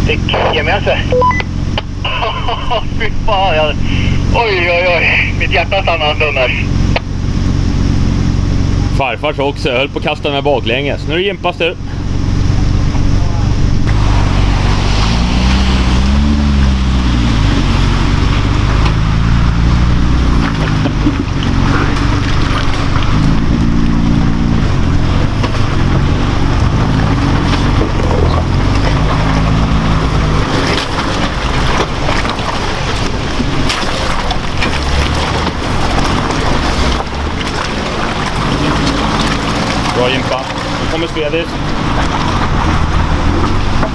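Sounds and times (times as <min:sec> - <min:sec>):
truck engine revving: 0:00.0 - 0:43.9
water splashing: 0:12.0 - 0:43.9.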